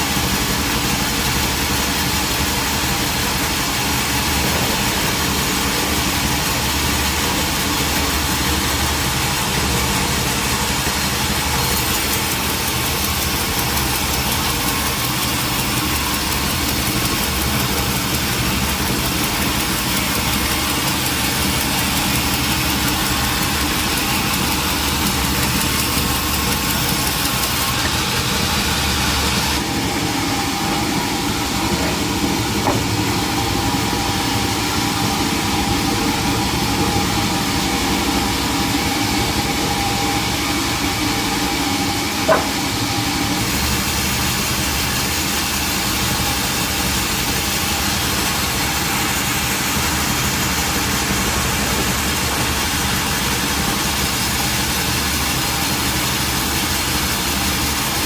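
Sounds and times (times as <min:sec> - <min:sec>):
sawmill machinery running: 0:00.0 - 0:58.0
short sharp knock: 0:42.2 - 0:42.6.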